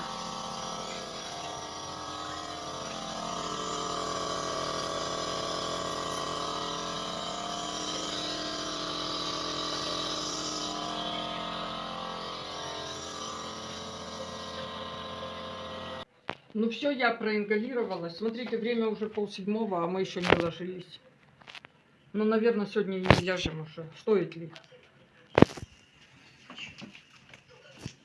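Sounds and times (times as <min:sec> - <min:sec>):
nebulizer buzzing hum: 0:00.0 - 0:16.1.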